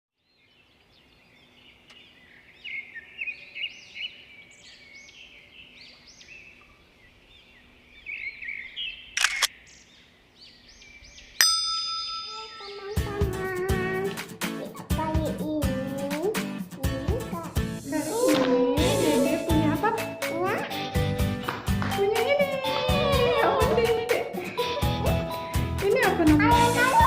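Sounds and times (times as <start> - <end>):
small birds chirping: 0.2 - 11.5, 12.3 - 14.8
bright ringing chime: 11.4 - 13.1.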